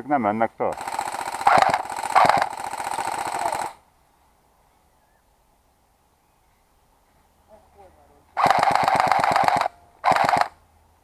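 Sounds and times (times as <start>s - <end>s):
airsoft gun firing burst: 0.8s - 3.8s, 8.4s - 10.6s.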